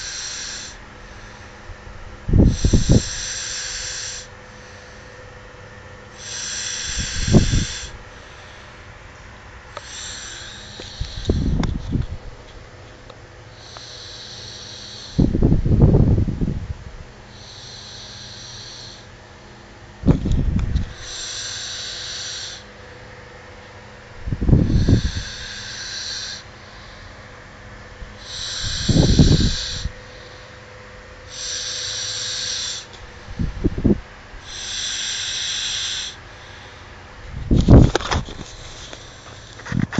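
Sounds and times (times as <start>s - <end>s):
loud low snores: 0.0s - 1.6s, 2.3s - 5.2s, 6.1s - 8.6s, 9.7s - 12.0s, 13.5s - 16.4s, 17.3s - 19.2s, 20.8s - 22.7s, 24.3s - 27.2s, 28.1s - 30.6s, 31.2s - 36.9s
quiet hissing breaths: 0.0s - 16.1s, 16.8s - 39.9s.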